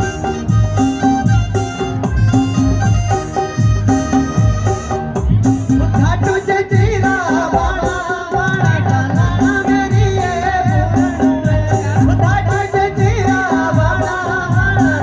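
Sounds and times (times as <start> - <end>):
instrumental backing: 0.0 - 15.0
repeating drum beat: 0.0 - 15.0
person singing: 5.8 - 15.0.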